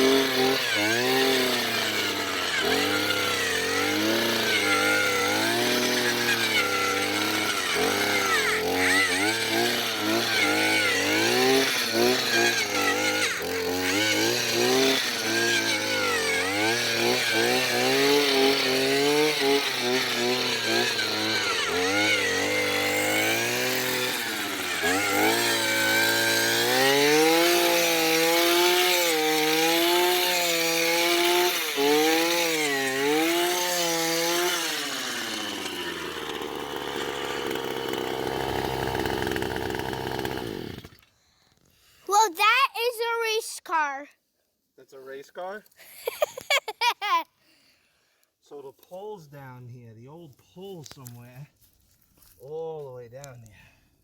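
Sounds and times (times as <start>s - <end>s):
earth auger engine running: 0.0s - 41.1s.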